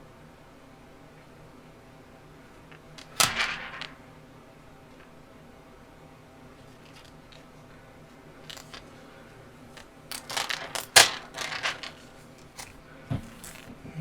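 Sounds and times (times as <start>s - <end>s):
plastic film crinkling and clicking: 8.5s - 9.0s, 9.8s - 13.8s.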